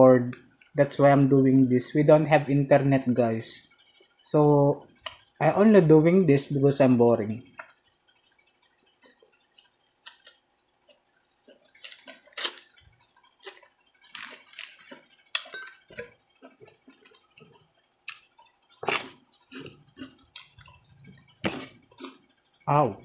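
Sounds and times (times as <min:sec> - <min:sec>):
wet mouth clicks and smacks: 0:05.0 - 0:05.3, 0:07.6 - 0:08.4, 0:09.0 - 0:13.7, 0:14.7 - 0:22.2
crunchy chewing: 0:07.4 - 0:22.6.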